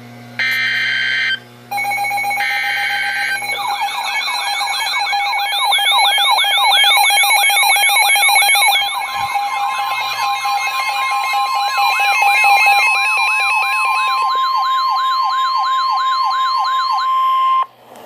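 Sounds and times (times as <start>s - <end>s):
rising and falling siren warble: 0.4s - 17.7s
steady alert tone: 1.0s - 16.5s
raspy digital header bursts: 1.7s - 14.6s.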